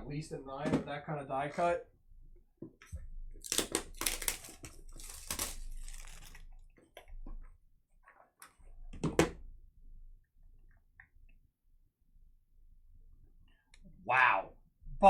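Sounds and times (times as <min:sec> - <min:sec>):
cards clicking and rustling: 0:03.4 - 0:06.5
foil wrapper crinkling and tearing: 0:03.4 - 0:06.5.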